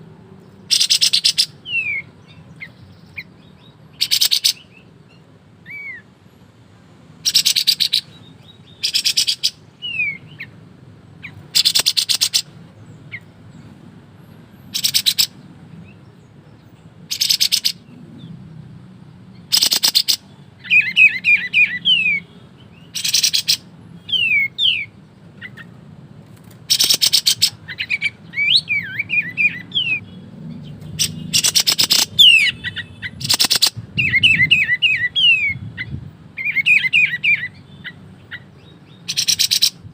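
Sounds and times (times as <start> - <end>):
bird rattling song bursts: 0.6 - 2.0, 4.0 - 4.7, 7.2 - 8.1, 8.7 - 10.5, 11.2 - 12.6, 14.7 - 15.4, 17.1 - 17.9, 19.5 - 22.2, 22.8 - 25.7, 26.4 - 38.4, 39.0 - 39.8.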